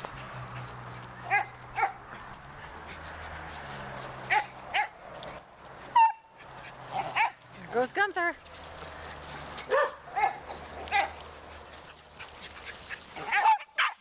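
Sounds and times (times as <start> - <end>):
dog barking: 1.2 - 2.0, 4.3 - 5.0, 7.0 - 7.4, 9.7 - 11.2, 13.2 - 14.0
dog yelp: 1.2 - 2.0, 5.9 - 7.4, 12.2 - 14.0.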